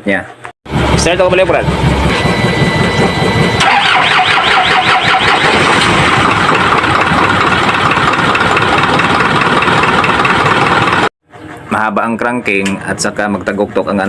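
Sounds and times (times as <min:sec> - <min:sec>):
diesel engine cranking: 0:00.7 - 0:11.1.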